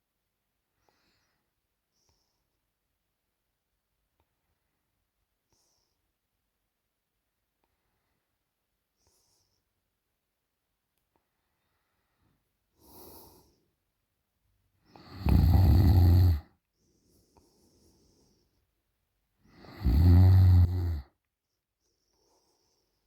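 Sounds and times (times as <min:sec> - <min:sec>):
faint breaths: 0:00.7 - 0:02.7, 0:07.6 - 0:09.8, 0:11.1 - 0:13.9, 0:14.8 - 0:23.0
woman snoring loudly: 0:15.0 - 0:16.5, 0:19.5 - 0:21.0.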